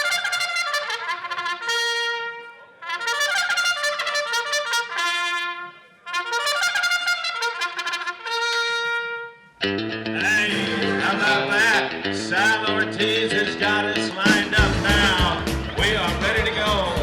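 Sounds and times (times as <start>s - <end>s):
trumpet playing: 0.0s - 9.6s, 14.3s - 17.0s.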